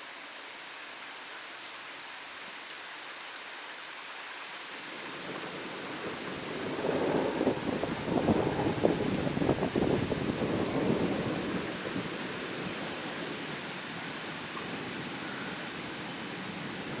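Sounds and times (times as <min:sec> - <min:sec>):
steady rain: 0:00.0 - 0:17.0
thunder rumbling: 0:05.0 - 0:17.0.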